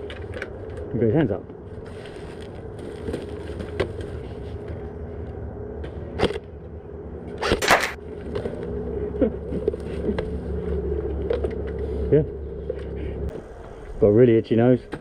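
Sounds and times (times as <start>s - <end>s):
steady low hum: 0.0s - 15.0s
airsoft rifle shots: 7.4s - 8.0s.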